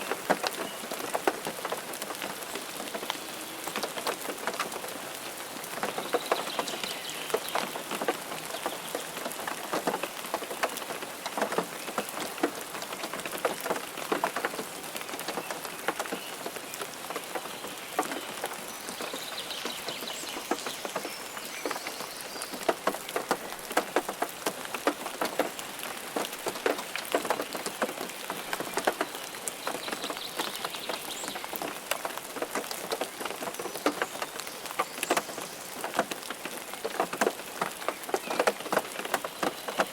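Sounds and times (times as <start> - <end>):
hiss of downpour: 0.0 - 39.9
raindrops pattering: 0.0 - 39.9.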